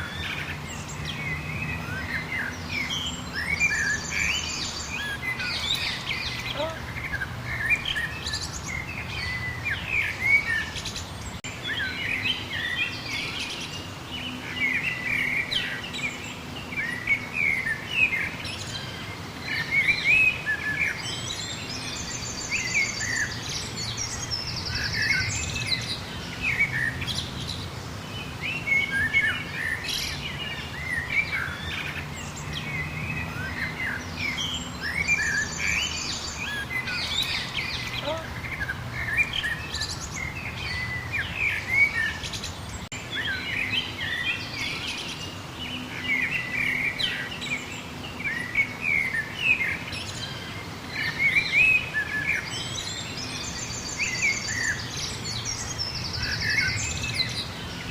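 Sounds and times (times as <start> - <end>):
birds singing and chirping: 0.0 - 57.9.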